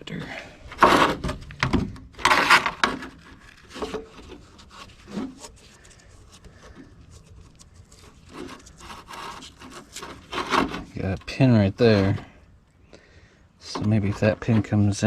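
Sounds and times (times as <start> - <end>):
scraping and rubbing: 0.1 - 12.5, 13.6 - 15.0.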